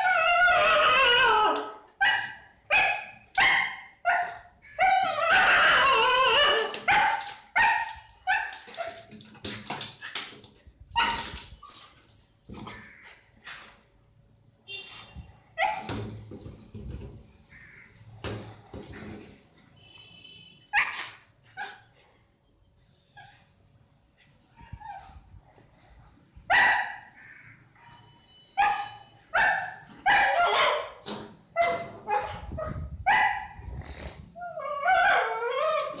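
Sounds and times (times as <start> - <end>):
dog barking: 26.5 - 27.0, 29.4 - 31.0.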